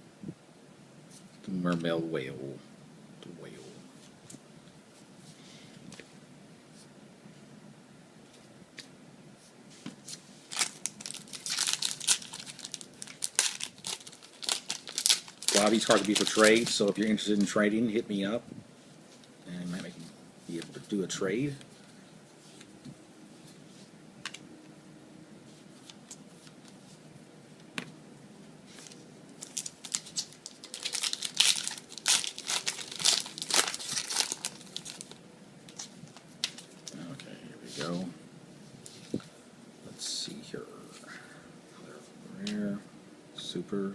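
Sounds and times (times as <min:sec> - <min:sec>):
foil wrapper crinkling and tearing: 0:10.5 - 0:17.4, 0:28.8 - 0:37.2.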